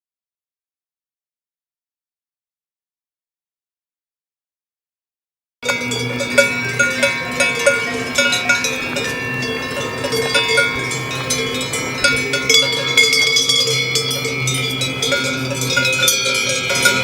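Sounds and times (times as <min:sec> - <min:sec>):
cowbells clanking: 0:05.6 - 0:17.0.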